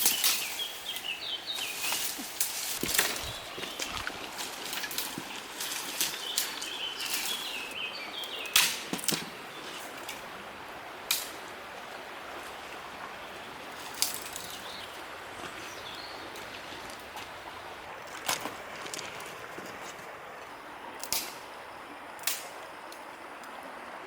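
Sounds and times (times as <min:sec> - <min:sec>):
bird singing: 0:00.0 - 0:02.2, 0:02.9 - 0:04.1, 0:04.8 - 0:08.6, 0:14.2 - 0:16.9
outdoor background hiss: 0:00.0 - 0:24.0.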